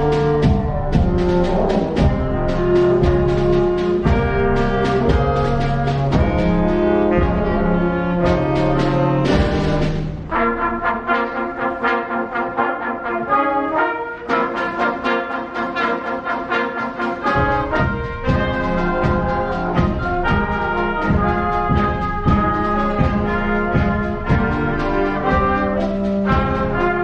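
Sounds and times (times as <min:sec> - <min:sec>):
low bass notes: 0:00.0 - 0:10.5, 0:17.8 - 0:27.0
school band playing: 0:00.0 - 0:27.0.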